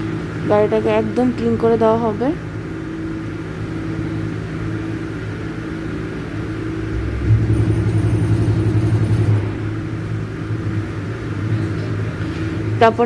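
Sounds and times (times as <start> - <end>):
car wash machinery humming: 5.0 - 13.0
pulsing low rumble: 6.4 - 11.2.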